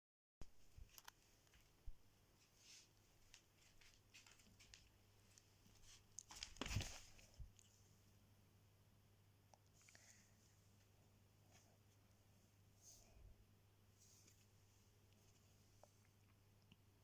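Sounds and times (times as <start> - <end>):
soft rustles and clicks: 0.4 - 8.0, 13.9 - 16.8
faint steady hum: 0.4 - 17.0.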